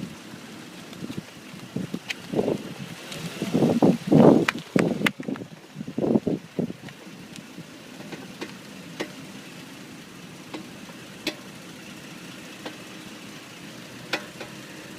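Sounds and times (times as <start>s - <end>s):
car low hum: 0.0s - 14.9s
brakes creaking clicks: 0.1s - 9.4s, 10.4s - 11.5s, 12.5s - 12.8s, 14.0s - 14.9s.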